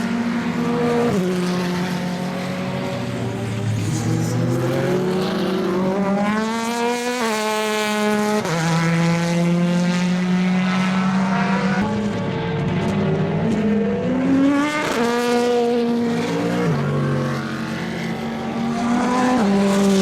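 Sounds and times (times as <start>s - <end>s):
race car engine at full throttle: 0.0s - 20.0s.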